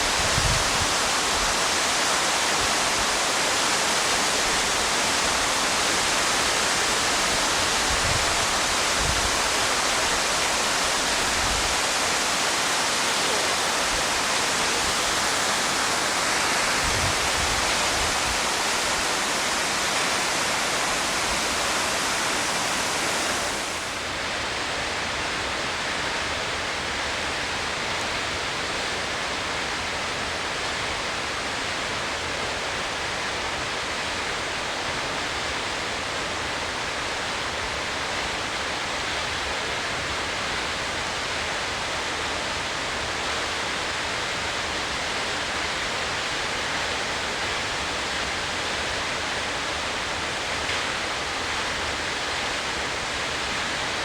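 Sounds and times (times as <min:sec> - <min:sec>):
waterfall rushing: 0:00.0 - 0:54.0.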